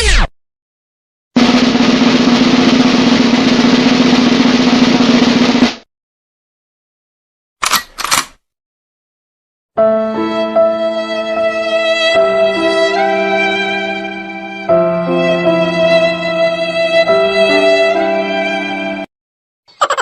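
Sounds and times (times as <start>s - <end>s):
snare drum roll: 1.4s - 5.9s.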